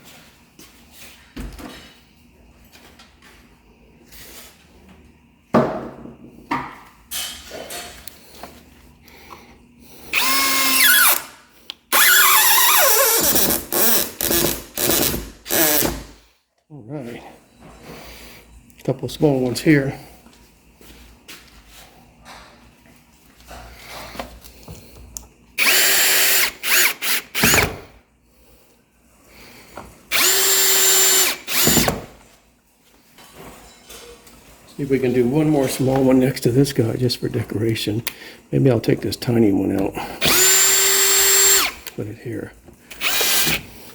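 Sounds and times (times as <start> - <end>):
power drill driving screw into wood: 10.1 - 16.2, 25.6 - 27.9, 30.1 - 32.1, 40.2 - 41.9, 42.9 - 43.7.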